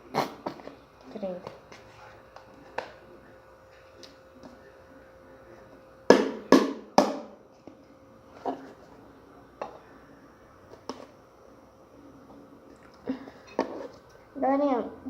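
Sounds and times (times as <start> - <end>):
hard knocks on a hard surface: 6.1 - 7.4.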